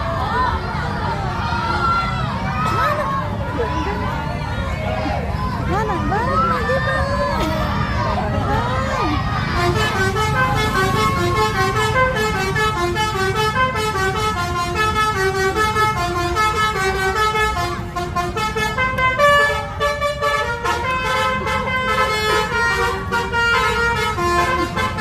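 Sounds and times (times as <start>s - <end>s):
bus musical horn playing tune: 9.5s - 25.0s.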